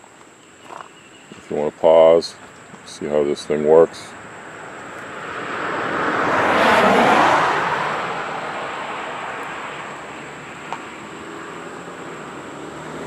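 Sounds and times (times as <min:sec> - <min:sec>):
car passing by: 0:04.0 - 0:13.0.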